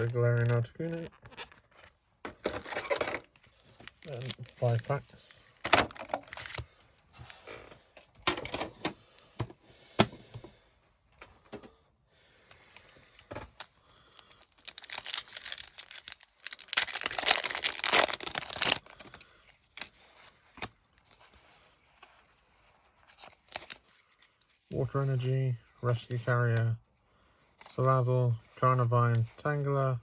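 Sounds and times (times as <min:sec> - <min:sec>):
foil wrappers crinkling and tearing: 0:03.7 - 0:05.0, 0:13.9 - 0:20.0.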